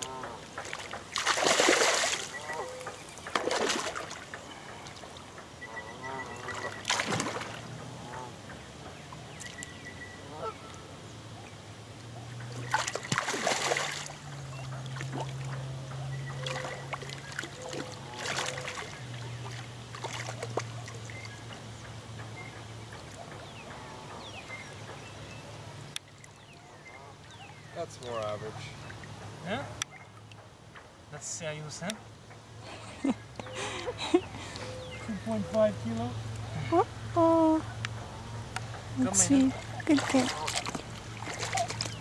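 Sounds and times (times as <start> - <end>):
low steady hum: 0.0 - 42.0
fish thrashing and splashing water: 0.4 - 4.4, 6.5 - 7.8, 12.6 - 15.5, 16.3 - 21.2, 39.2 - 42.0.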